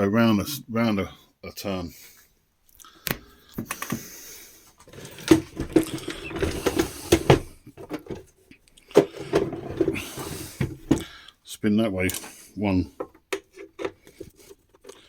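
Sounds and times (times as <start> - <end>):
hard plastic parts clicking and scraping: 3.0 - 11.1, 12.0 - 15.0.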